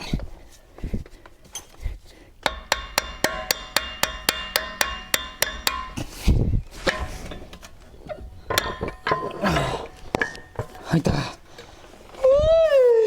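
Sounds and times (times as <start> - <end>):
hammer striking metal: 2.4 - 11.2
scattered knocks: 2.4 - 11.2.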